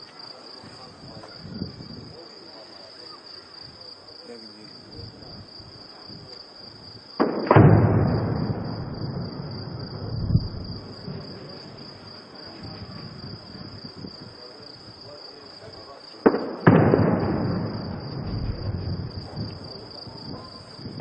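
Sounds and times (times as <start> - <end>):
crickets chirping: 0.0 - 21.0
smaller bang: 7.2 - 10.9, 16.3 - 19.8
heavy weapon blast echoing: 7.2 - 11.2, 16.3 - 19.8.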